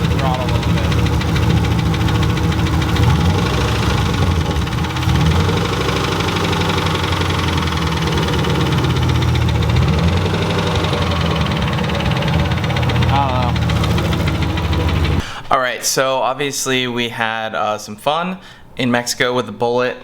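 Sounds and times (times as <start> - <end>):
car engine idling with knock: 0.0 - 15.2
engine revving: 0.0 - 15.2.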